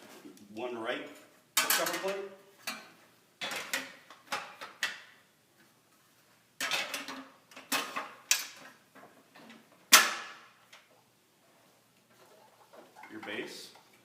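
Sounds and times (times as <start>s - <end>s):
sheet metal parts clattering: 1.6s - 5.1s, 6.6s - 10.4s.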